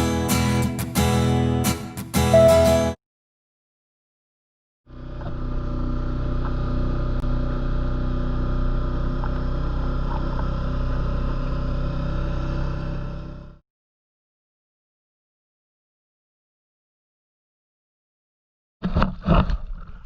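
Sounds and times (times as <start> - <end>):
engine running steadily: 4.9 - 13.6.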